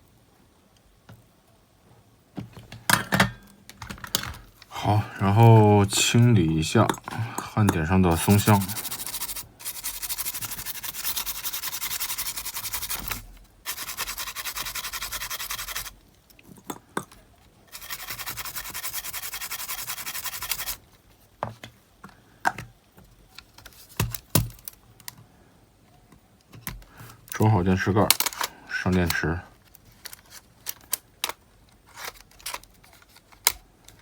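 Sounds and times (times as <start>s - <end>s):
scrubbing circuit board: 7.6s - 15.9s.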